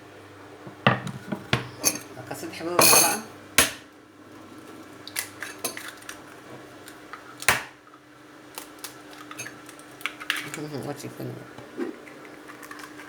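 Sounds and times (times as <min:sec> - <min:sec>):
utensils clinking against a bowl: 0:00.9 - 0:03.3, 0:05.4 - 0:06.2, 0:09.2 - 0:10.9.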